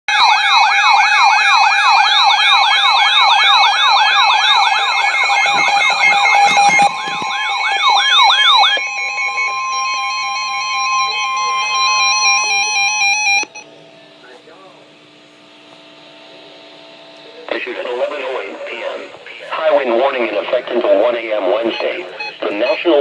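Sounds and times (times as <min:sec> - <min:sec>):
falling siren-like electronic tone: 0:00.1 - 0:13.5
steady electronic alert tones: 0:01.9 - 0:13.7, 0:21.4 - 0:23.0.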